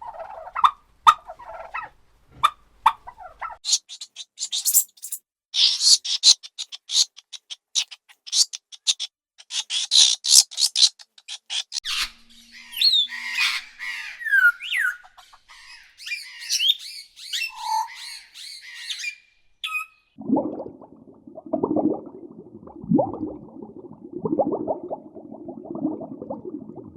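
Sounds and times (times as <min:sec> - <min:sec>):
harsh bird squawks: 0:00.0 - 0:20.1
quick bird chirps sliding down: 0:03.7 - 0:08.9.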